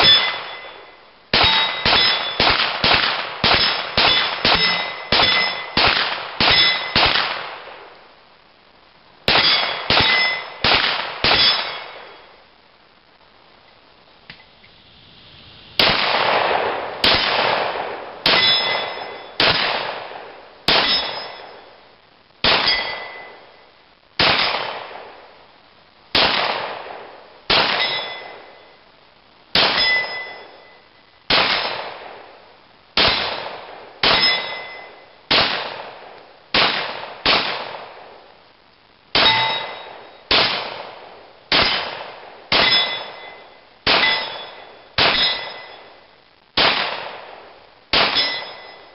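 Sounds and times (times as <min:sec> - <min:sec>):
steel target ringing: 0:00.0 - 0:02.5, 0:03.4 - 0:07.1, 0:09.3 - 0:10.6, 0:11.2 - 0:12.2, 0:18.3 - 0:19.5, 0:20.7 - 0:21.7, 0:22.5 - 0:23.4, 0:27.7 - 0:28.6, 0:29.6 - 0:30.8, 0:34.0 - 0:35.1, 0:39.2 - 0:40.2, 0:42.5 - 0:46.0, 0:48.0 - 0:48.9
pistol shots: 0:01.3 - 0:07.8, 0:09.3 - 0:12.2, 0:15.8 - 0:21.6, 0:22.4 - 0:23.3, 0:24.2 - 0:25.2, 0:26.2 - 0:28.4, 0:29.6 - 0:30.2, 0:31.3 - 0:32.2, 0:33.0 - 0:38.1, 0:39.1 - 0:45.8, 0:46.6 - 0:48.8.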